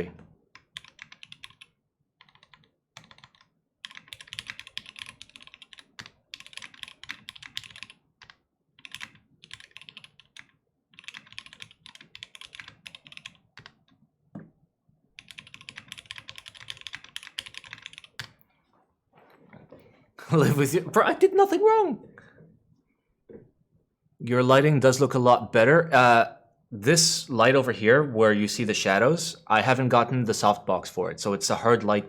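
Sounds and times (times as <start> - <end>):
fast typing on mechanical keyboard: 0.6 - 14.0, 15.2 - 18.4.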